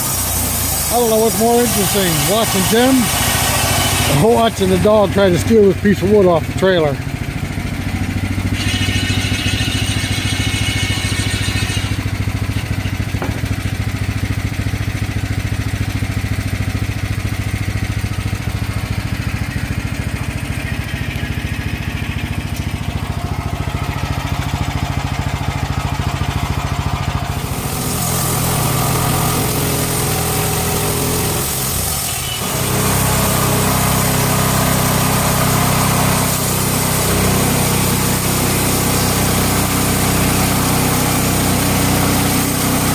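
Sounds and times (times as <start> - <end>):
sawmill engine running: 0.0 - 42.9.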